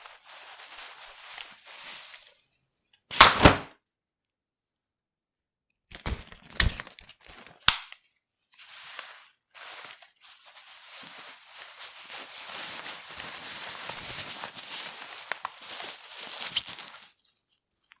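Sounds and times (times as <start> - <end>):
umbrella canopy fabric rustling: 0.0 - 2.4, 8.6 - 17.2
umbrella snapping and clicking: 3.1 - 3.7.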